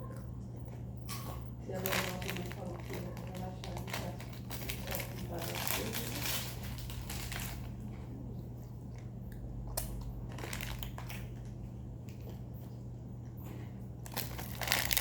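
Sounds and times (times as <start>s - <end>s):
steady low hum: 0.0s - 15.0s
snack packaging crinkling: 1.7s - 7.8s, 9.7s - 12.8s, 14.0s - 15.0s.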